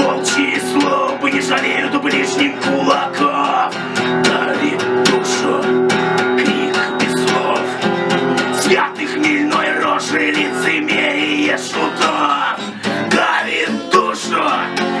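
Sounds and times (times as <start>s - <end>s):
strummed guitar music: 0.0s - 15.0s.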